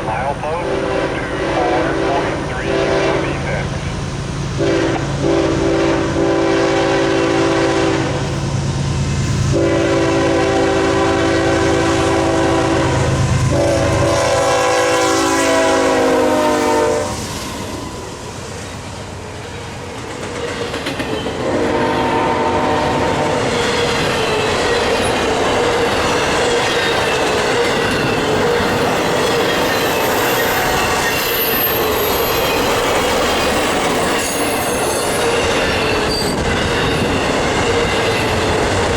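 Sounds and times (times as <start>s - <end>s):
locomotive air horn blasts: 0.6s - 3.8s, 4.6s - 8.4s, 9.5s - 17.2s, 21.4s - 23.3s
train wheel clatter: 18.8s - 22.1s, 22.7s - 38.9s
ringing wheel squeal: 23.6s - 38.5s.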